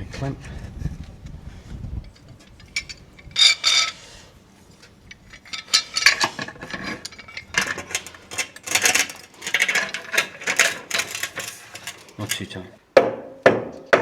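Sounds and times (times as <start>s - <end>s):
metal clamps clicking and scraping: 2.0s - 12.6s.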